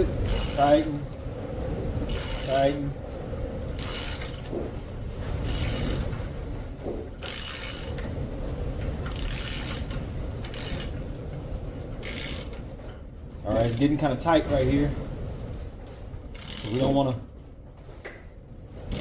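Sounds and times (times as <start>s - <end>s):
steady low rumble: 0.0s - 19.0s
ratchet wrench clicking: 0.2s - 0.9s, 2.1s - 2.7s, 3.8s - 4.5s, 5.4s - 6.0s, 7.2s - 7.9s, 9.1s - 9.9s, 12.0s - 12.5s, 16.4s - 17.0s.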